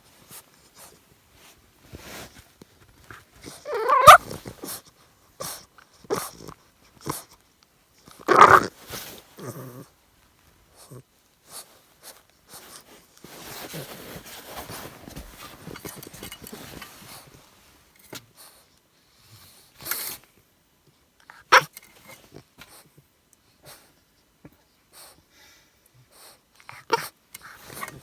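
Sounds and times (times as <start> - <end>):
puppy making noises: 3.4 - 4.8, 5.4 - 7.4, 8.1 - 8.8, 21.3 - 21.7, 26.6 - 28.0.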